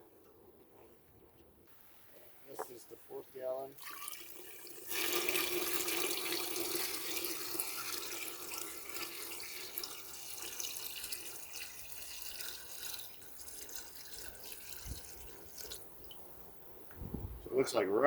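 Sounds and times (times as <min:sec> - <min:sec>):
water pouring into a pot: 0:03.7 - 0:16.8.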